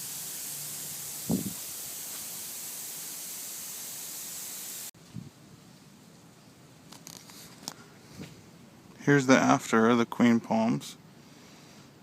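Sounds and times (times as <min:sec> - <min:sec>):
wind on microphone: 0:01.2 - 0:01.6.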